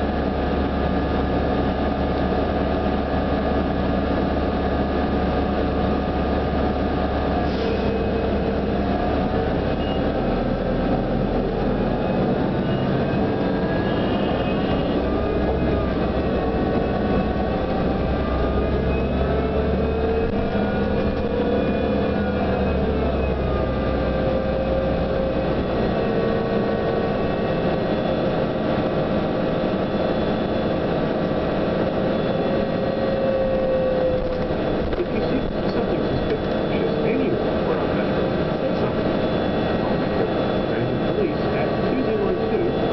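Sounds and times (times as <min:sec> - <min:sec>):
bus drive and road noise: 0:00.0 - 0:42.9
whining tones rising and falling: 0:14.8 - 0:41.2.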